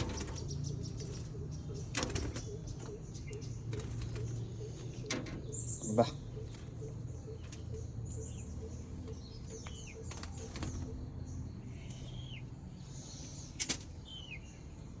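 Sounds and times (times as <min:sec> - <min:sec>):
pet bird chirping: 0:00.0 - 0:15.0.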